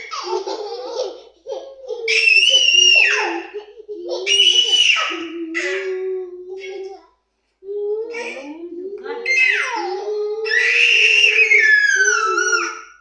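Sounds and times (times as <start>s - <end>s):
children squealing: 0.0s - 0.2s, 2.1s - 3.6s, 4.3s - 5.3s, 10.4s - 13.0s
children's voices: 1.9s - 13.0s.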